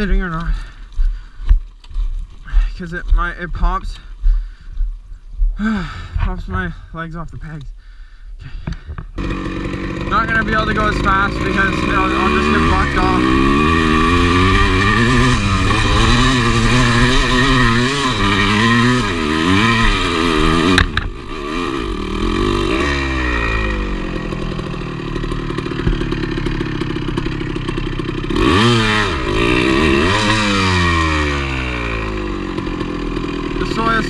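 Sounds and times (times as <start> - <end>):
dirt bike engine revving: 9.2 - 34.0.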